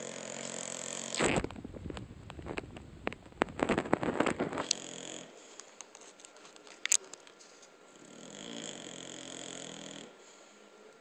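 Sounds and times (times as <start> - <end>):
dog snoring: 0.0 - 1.4, 4.6 - 5.5, 7.9 - 10.6
faint breath: 10.0 - 10.9.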